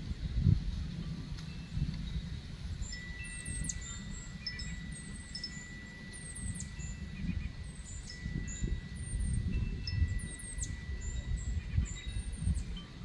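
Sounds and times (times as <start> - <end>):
low wind rumble: 0.0 - 13.0
thin steady ringing tone: 1.0 - 13.0
small birds chirping: 2.8 - 9.2, 9.9 - 12.8.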